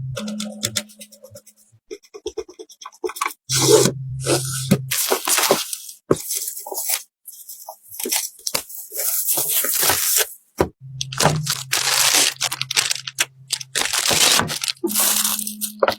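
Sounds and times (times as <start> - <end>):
crunching handling noises: 3.5 - 15.9.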